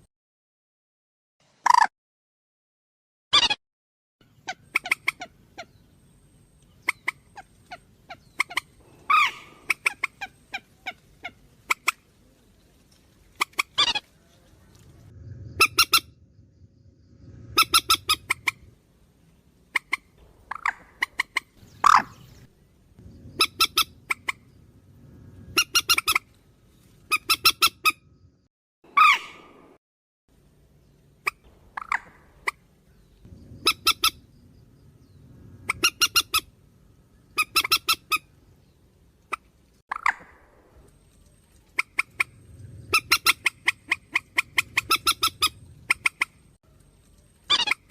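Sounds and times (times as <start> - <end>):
bird squawks: 4.3 - 5.8, 6.8 - 12.1, 13.4 - 14.3, 15.6 - 16.1, 17.5 - 18.7, 19.7 - 22.4, 23.2 - 24.6, 25.5 - 26.3, 27.1 - 28.0, 28.9 - 29.6, 31.2 - 32.7, 33.5 - 34.3, 35.6 - 36.5, 37.3 - 38.3, 41.6 - 46.4, 47.5 - 47.9.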